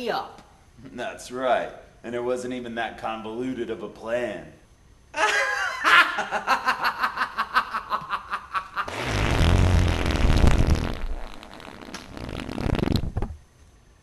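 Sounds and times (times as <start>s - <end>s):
person laughing: 5.2s - 9.0s.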